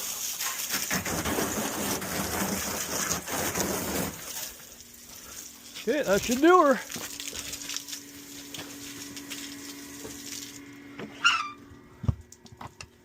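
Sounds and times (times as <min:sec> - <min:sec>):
water hissing from hose: 0:00.0 - 0:10.6
short squeak: 0:11.1 - 0:11.6.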